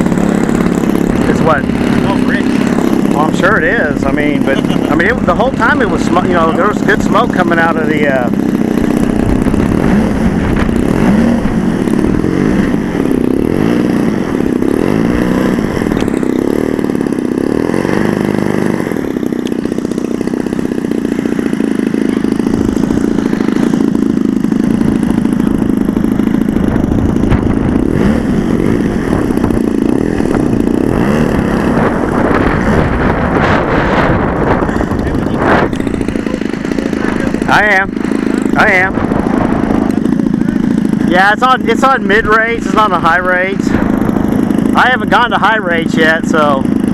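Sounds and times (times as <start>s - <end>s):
model aircraft engine: 0.0s - 46.9s
wind buffeting microphone: 8.3s - 17.1s, 21.5s - 41.0s.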